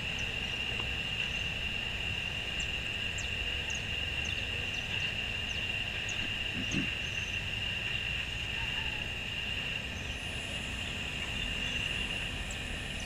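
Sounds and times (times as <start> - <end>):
high-pitched drone: 8.4 - 13.0.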